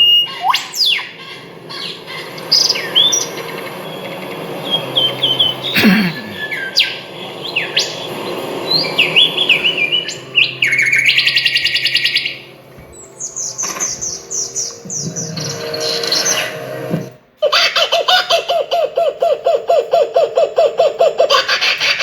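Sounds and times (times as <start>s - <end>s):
fast rattling bird trill: 0.0s - 5.8s
songbirds chirping and singing: 0.0s - 22.0s.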